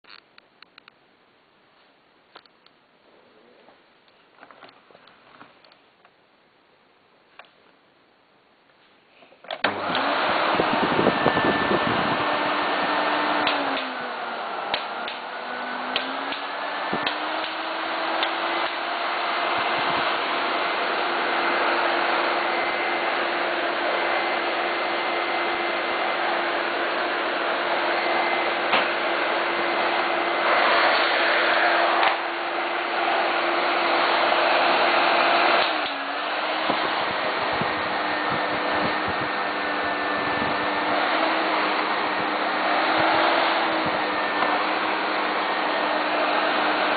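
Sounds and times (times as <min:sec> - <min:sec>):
vacuum cleaner motor whining: 0:09.5 - 0:46.9.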